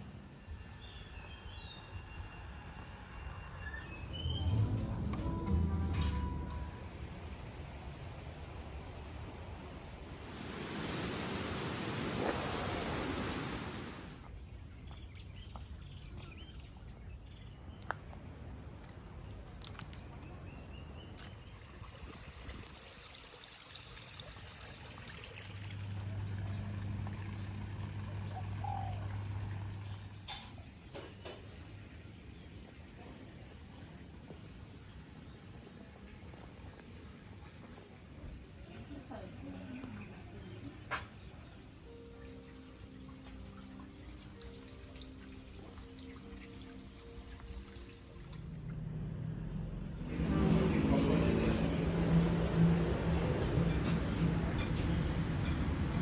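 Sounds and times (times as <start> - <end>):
low steady hum: 0.0 - 15.5, 24.0 - 30.6
high-pitched drone: 4.0 - 11.5
rushing noise: 4.0 - 14.2.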